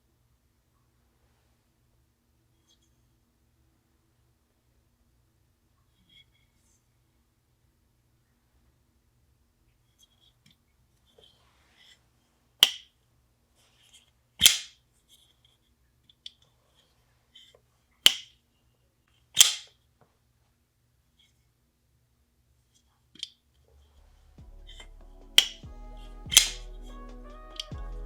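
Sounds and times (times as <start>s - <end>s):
folding knife blade snapping: 12.6s - 12.8s, 14.4s - 14.7s, 18.1s - 18.3s, 19.4s - 19.7s, 25.4s - 25.7s, 26.3s - 26.6s.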